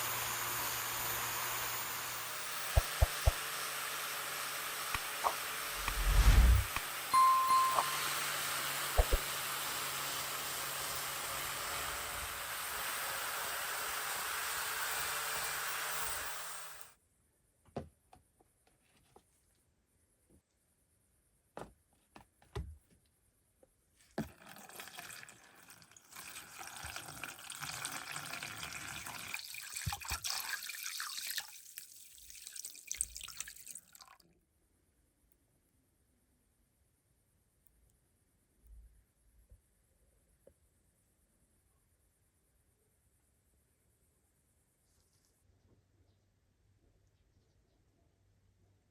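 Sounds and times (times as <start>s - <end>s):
uneven noise: 5.7s - 8.0s
water running from a tap: 24.3s - 34.1s.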